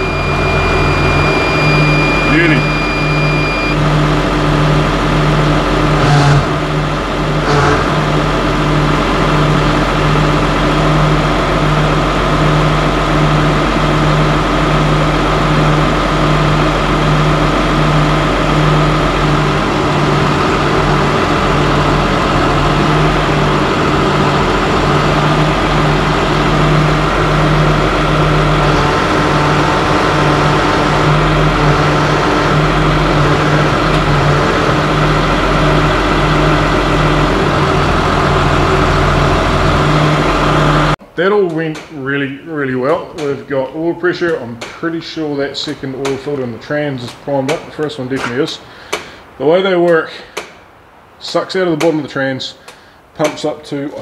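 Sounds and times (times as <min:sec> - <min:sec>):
diesel tractor engine idling: 0:00.0 - 0:41.0.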